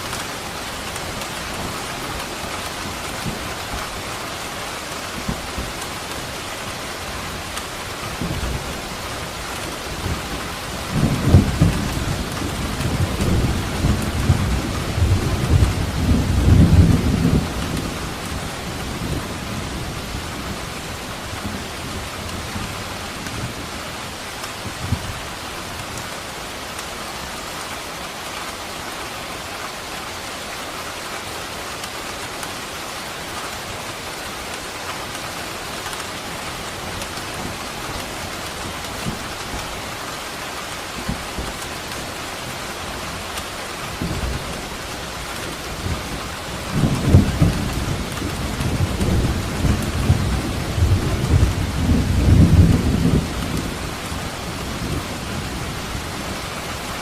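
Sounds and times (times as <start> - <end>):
heavy rain: 0.0 - 57.0
rolling thunder: 45.4 - 53.8.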